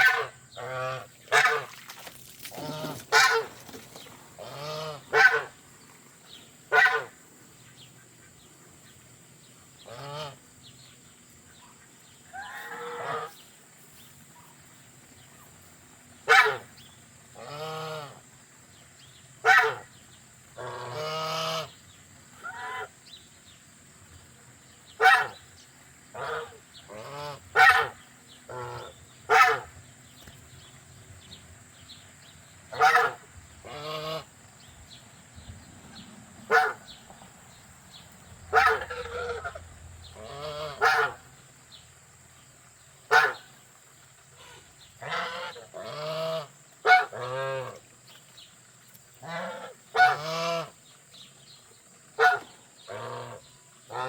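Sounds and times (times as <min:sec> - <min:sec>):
geese honking: 0:00.0 - 0:01.8, 0:02.5 - 0:03.6, 0:04.4 - 0:05.6, 0:06.7 - 0:07.1, 0:12.3 - 0:13.4, 0:20.6 - 0:21.8, 0:26.2 - 0:29.7, 0:32.7 - 0:34.3, 0:38.5 - 0:41.3, 0:44.4 - 0:47.8, 0:49.2 - 0:50.8.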